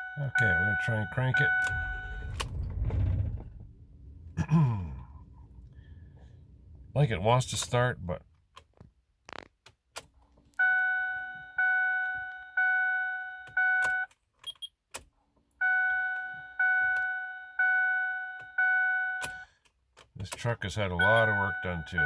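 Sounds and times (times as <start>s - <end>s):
warning chime dinging: 0.0s - 2.4s, 21.0s - 22.0s.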